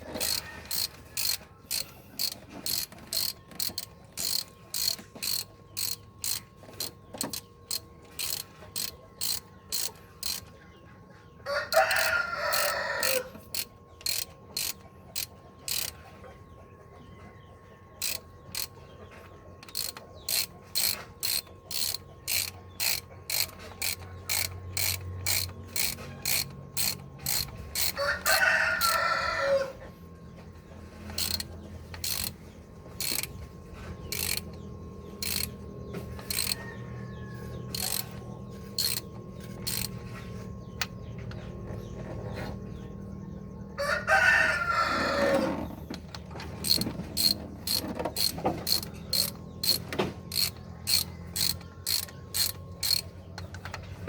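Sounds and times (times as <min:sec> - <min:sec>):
rooster crowing: 0:00.0 - 0:01.4, 0:11.4 - 0:13.5, 0:27.8 - 0:29.9, 0:36.2 - 0:38.1, 0:43.8 - 0:45.7
ratchet wrench clicking: 0:00.0 - 0:10.5, 0:11.7 - 0:16.0, 0:18.0 - 0:18.8, 0:19.6 - 0:29.1, 0:31.0 - 0:32.4, 0:33.0 - 0:33.4, 0:34.0 - 0:40.0, 0:45.9 - 0:53.8.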